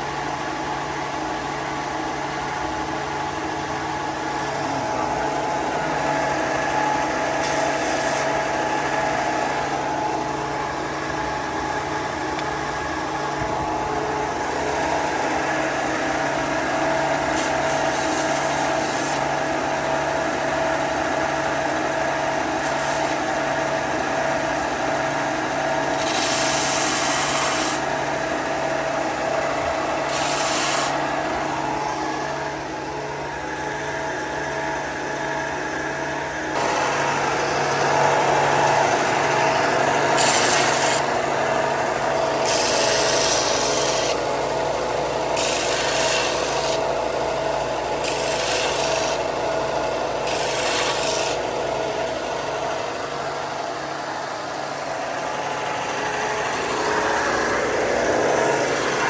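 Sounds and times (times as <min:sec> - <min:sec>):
woodworking power tool whine: 0:00.0 - 0:59.0
hissing of wood cutting: 0:04.4 - 0:10.2, 0:14.6 - 0:20.1, 0:22.4 - 0:24.2, 0:24.8 - 0:32.6, 0:36.5 - 0:52.2.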